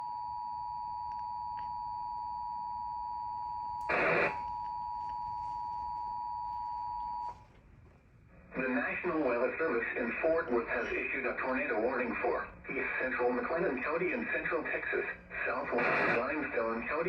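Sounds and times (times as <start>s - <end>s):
loud noise burst: 3.9s - 4.4s, 14.8s - 17.0s.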